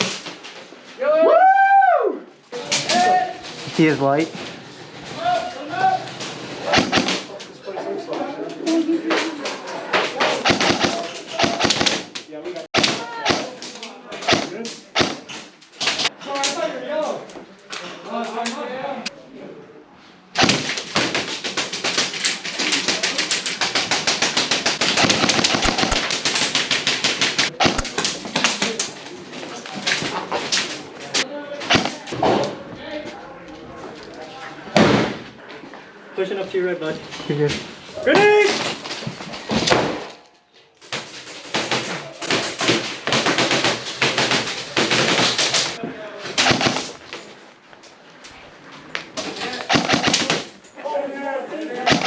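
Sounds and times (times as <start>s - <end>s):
airsoft guns firing rapidly: 6.7s - 7.3s, 10.3s - 12.1s, 12.8s - 13.6s, 14.2s - 16.1s, 20.4s - 28.6s, 31.7s - 32.0s, 41.4s - 45.8s, 46.4s - 47.0s, 49.6s - 50.5s.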